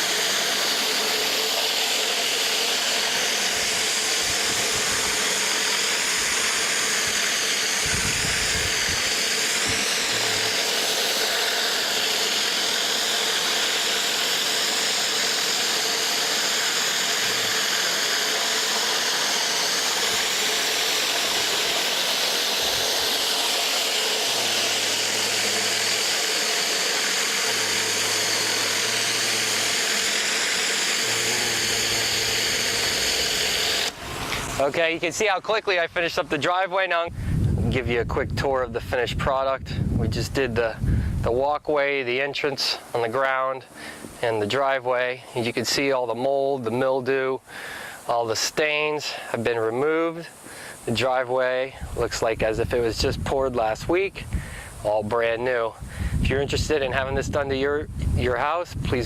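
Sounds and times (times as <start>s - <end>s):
high-pressure water spraying: 0.0s - 35.4s.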